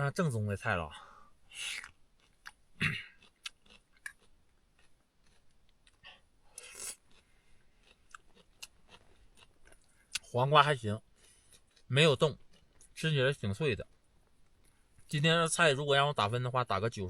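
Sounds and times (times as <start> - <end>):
wet mouth clicks: 1.5 - 9.0
person chewing crunchy food: 1.6 - 13.2.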